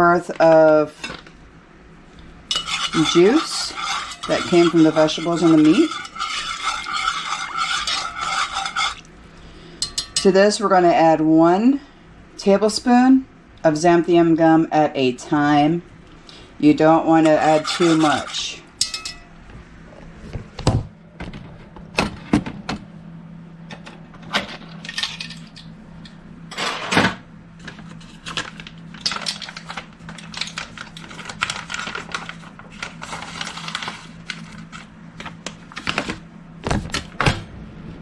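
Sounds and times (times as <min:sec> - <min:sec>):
steady low hum: 0:00.0 - 0:38.0
metal utensils clinking on pan: 0:02.5 - 0:09.0, 0:17.2 - 0:19.3
utensil scrapes: 0:02.5 - 0:09.1, 0:17.2 - 0:18.6.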